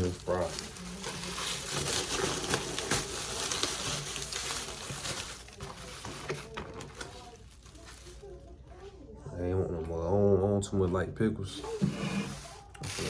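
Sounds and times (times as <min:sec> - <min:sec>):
paper packaging crinkling: 0:00.0 - 0:09.0, 0:11.6 - 0:13.0.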